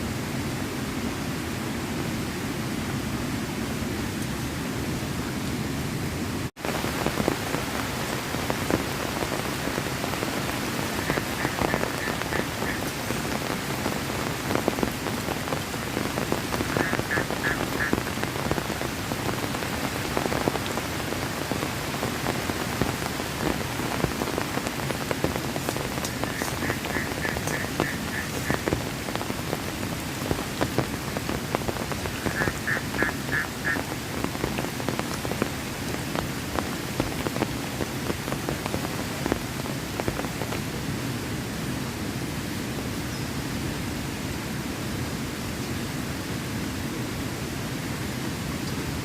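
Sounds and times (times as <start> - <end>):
heavy rain falling: 0.0 - 49.0.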